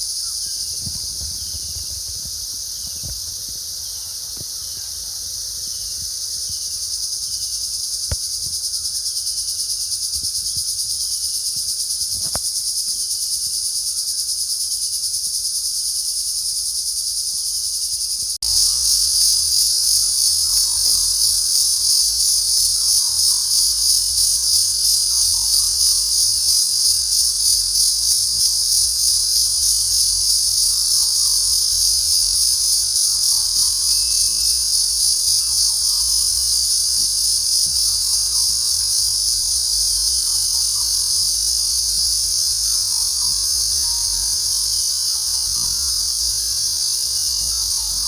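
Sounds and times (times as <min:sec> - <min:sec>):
harsh insect call: 0:00.0 - 0:48.0
insects shrilling: 0:18.4 - 0:48.0.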